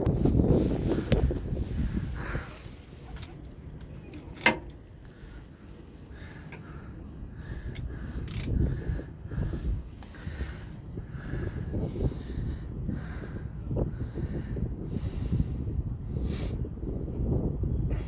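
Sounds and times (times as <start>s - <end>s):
low handling noise: 0.0s - 8.6s
sharp metallic click: 3.2s - 4.8s, 7.6s - 8.6s.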